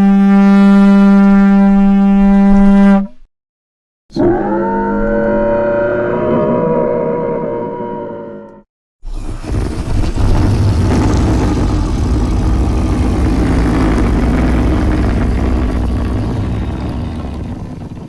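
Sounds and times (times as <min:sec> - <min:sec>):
higher tonal creature call: 0:04.1 - 0:08.5
low rough dinosaur growl: 0:09.1 - 0:18.0.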